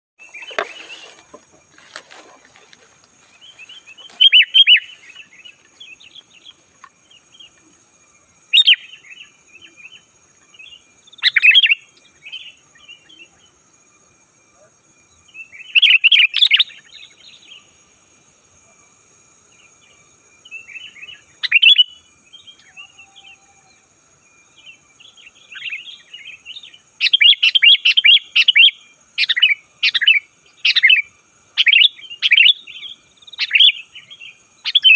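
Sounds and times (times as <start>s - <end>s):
bulbul singing: 0.2s - 7.8s, 8.5s - 13.6s, 19.5s - 23.4s, 24.5s - 34.9s.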